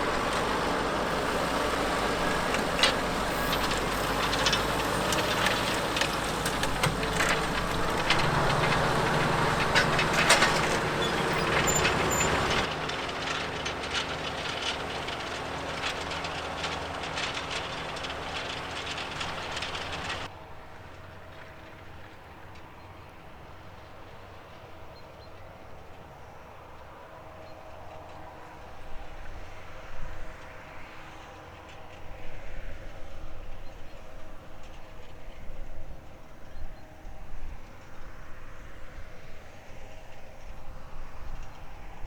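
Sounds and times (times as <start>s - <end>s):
plough rattling and clanking: 0.0s - 20.3s
tractor engine under load: 0.0s - 20.3s.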